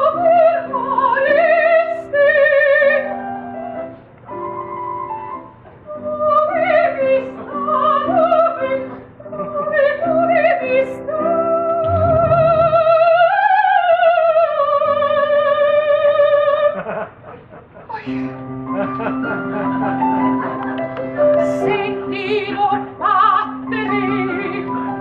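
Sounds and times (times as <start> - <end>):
sustained instrumental chords: 11.8 - 13.3.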